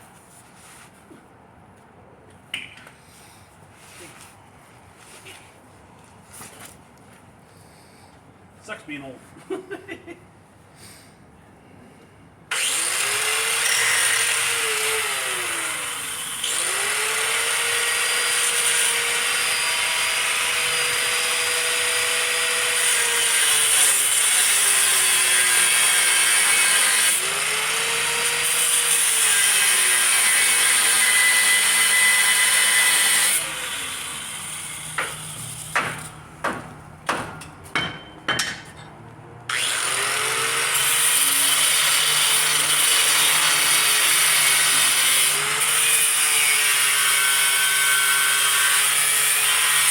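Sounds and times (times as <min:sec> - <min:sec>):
angle grinder cutting steel: 0:12.5 - 0:35.7, 0:39.5 - 0:49.9
sharp knocks: 0:35.0 - 0:38.9.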